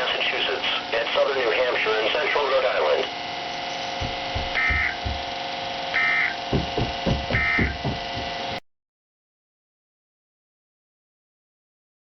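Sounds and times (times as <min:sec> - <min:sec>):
steady hum: 0:00.0 - 0:08.6
low thumps: 0:03.9 - 0:08.6.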